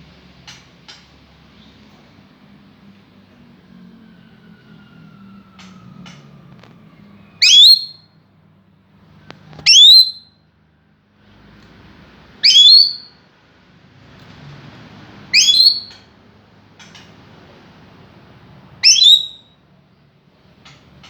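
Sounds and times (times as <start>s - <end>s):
parrot shrill whistling calls: 7.4s - 8.1s, 9.6s - 10.4s, 12.4s - 13.1s, 15.3s - 16.0s, 18.8s - 19.6s.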